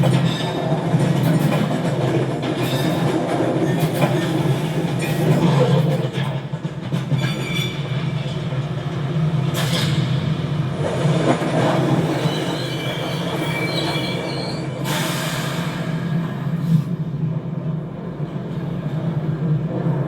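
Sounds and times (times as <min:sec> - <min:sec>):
metal-on-rail squeals: 0:00.0 - 0:01.7, 0:02.5 - 0:08.7, 0:09.4 - 0:10.6, 0:11.2 - 0:17.0.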